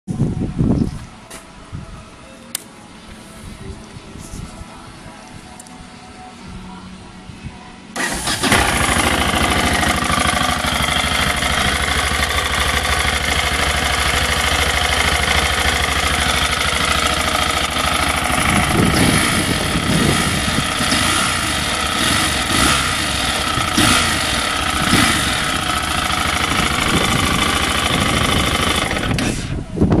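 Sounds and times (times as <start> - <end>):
motorcycle engine running and revving: 8.0 - 30.0
engine knock: 8.4 - 29.2.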